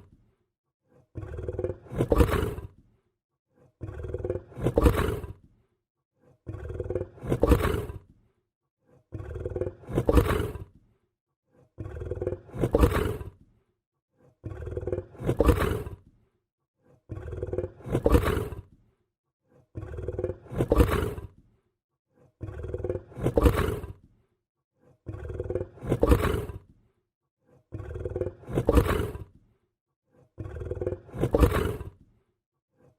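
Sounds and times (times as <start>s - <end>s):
lion growling: 0.9s - 5.6s, 6.2s - 13.6s, 14.2s - 21.6s, 22.2s - 24.2s, 24.8s - 29.5s, 30.1s - 32.9s.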